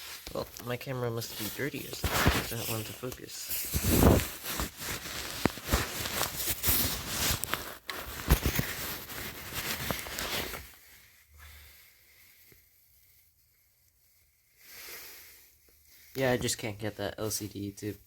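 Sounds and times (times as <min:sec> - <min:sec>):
hands fumbling with a hose: 0:00.0 - 0:10.8.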